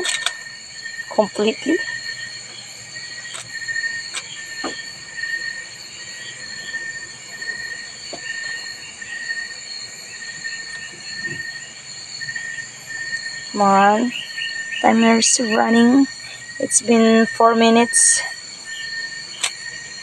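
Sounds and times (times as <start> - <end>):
insect chorus shrilling: 0.0 - 20.0.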